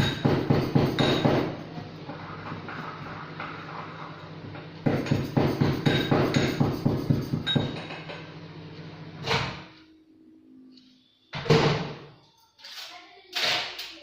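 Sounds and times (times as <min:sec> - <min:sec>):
microwave humming and rattling: 0:00.0 - 0:09.8.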